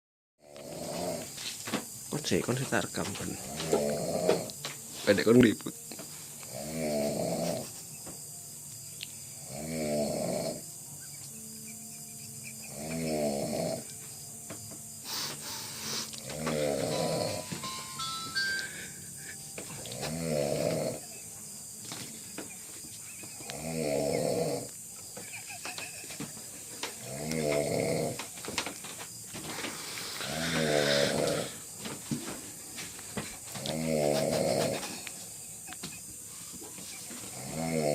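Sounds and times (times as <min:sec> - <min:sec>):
man snoring: 0:00.4 - 0:01.3, 0:03.5 - 0:04.6, 0:06.4 - 0:07.7, 0:09.4 - 0:10.7, 0:12.7 - 0:13.9, 0:15.0 - 0:17.5, 0:18.4 - 0:21.1, 0:23.4 - 0:24.7, 0:27.0 - 0:28.3, 0:30.0 - 0:31.6, 0:33.5 - 0:35.1, 0:37.3 - 0:37.9
breathy hiss: 0:00.4 - 0:37.9
quiet breathing: 0:15.0 - 0:17.4, 0:18.4 - 0:20.9, 0:29.5 - 0:31.7.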